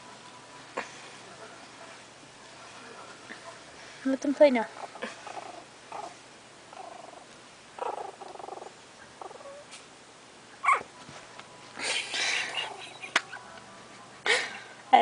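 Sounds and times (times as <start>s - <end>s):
puppies growling: 4.6s - 9.8s, 11.8s - 13.1s.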